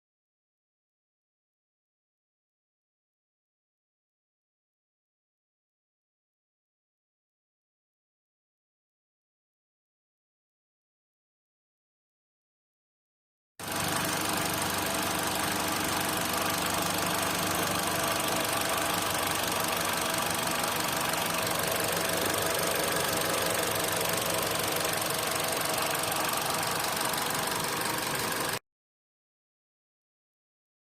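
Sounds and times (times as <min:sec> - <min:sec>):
car engine idling: 0:13.6 - 0:28.6.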